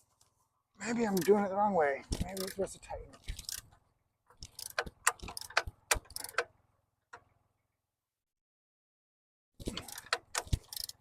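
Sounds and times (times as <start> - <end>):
wrench clicking on metal bolt: 2.1 - 2.6, 3.2 - 3.7, 4.4 - 6.5, 9.6 - 11.0.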